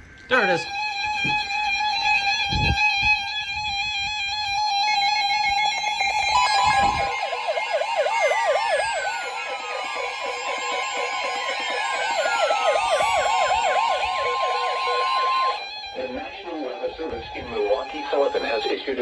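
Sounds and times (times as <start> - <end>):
fast warbling siren-like alarm: 4.7 - 19.0
loud steady alert tone: 6.3 - 15.6
falling tone glide: 6.3 - 15.9.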